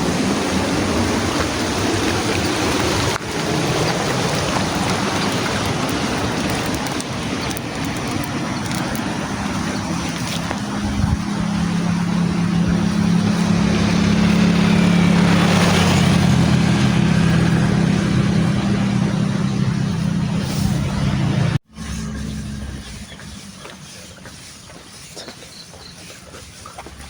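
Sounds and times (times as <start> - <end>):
vehicle engine running: 0.0 - 25.7.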